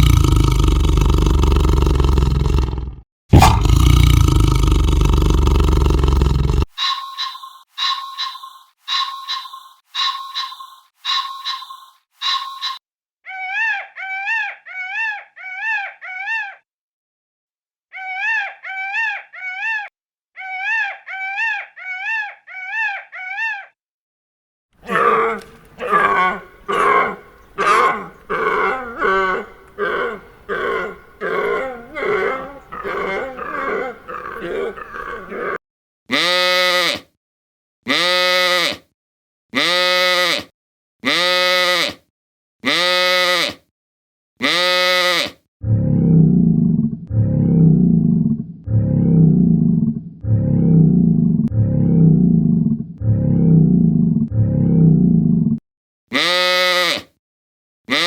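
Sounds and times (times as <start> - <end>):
animal grunting and chatter: 0.0 - 6.8, 24.8 - 35.6, 45.6 - 55.5
short repeated animal calls: 6.7 - 16.6
long pitched animal calls: 17.9 - 23.8, 24.9 - 35.6.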